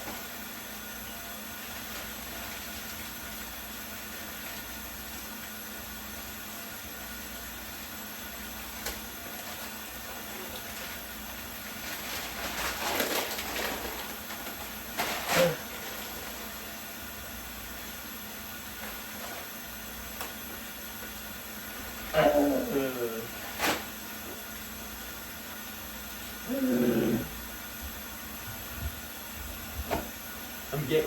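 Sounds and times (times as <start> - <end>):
rustling and clattering: 11.8 - 16.3.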